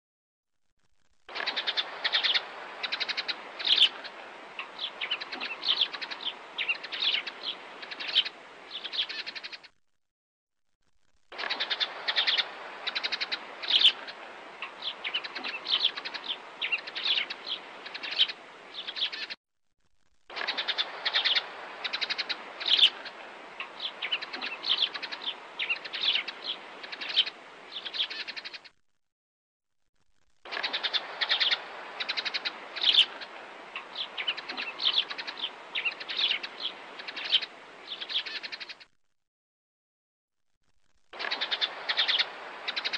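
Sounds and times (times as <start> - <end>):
sparrows chirping: 1.5 - 3.9, 4.6 - 9.6, 14.6 - 19.3, 20.5 - 23.0, 23.6 - 28.6, 30.6 - 33.2, 33.8 - 38.8, 41.2 - 42.9.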